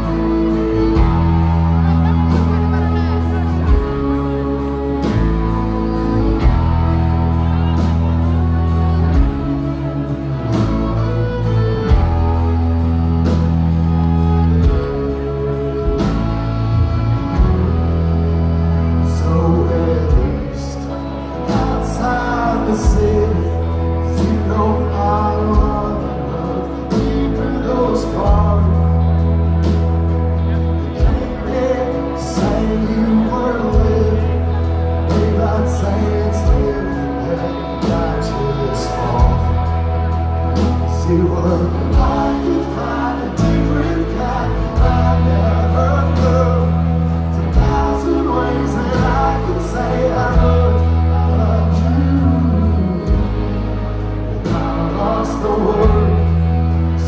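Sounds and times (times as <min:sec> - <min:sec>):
bass line: 0:00.0 - 0:57.0
drums: 0:00.0 - 0:57.0
live band music: 0:00.0 - 0:57.0
person singing: 0:16.8 - 0:57.0.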